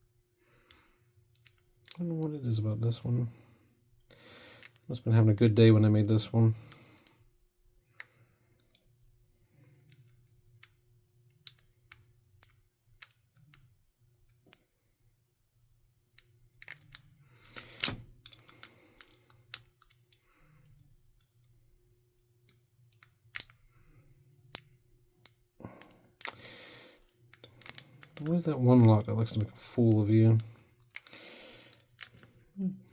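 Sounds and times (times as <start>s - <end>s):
lock picks clicking in padlocks: 1.3s - 2.0s, 4.5s - 5.6s, 9.9s - 13.7s, 16.2s - 21.6s, 22.3s - 23.7s, 24.4s - 28.3s, 29.2s - 32.4s.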